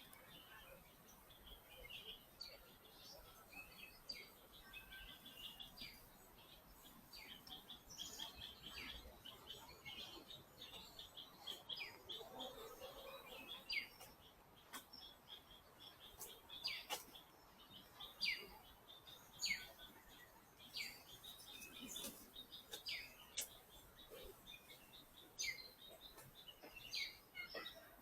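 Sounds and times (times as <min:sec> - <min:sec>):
birds chirping: 0:00.0 - 0:28.0
faint sharp clicks: 0:22.0 - 0:23.6.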